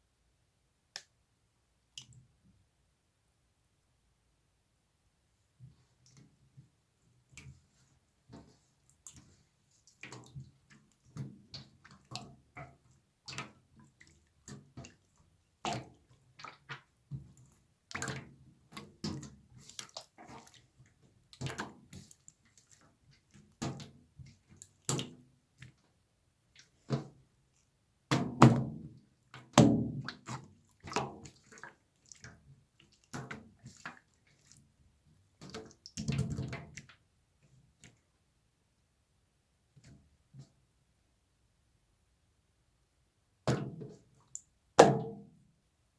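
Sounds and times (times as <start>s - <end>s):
slime squelching by hand: 7.5s - 25.8s, 28.6s - 37.0s.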